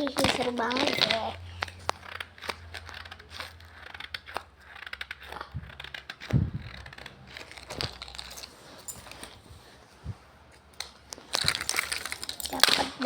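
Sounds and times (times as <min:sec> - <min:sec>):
crinkly material rustling: 0:00.0 - 0:02.7.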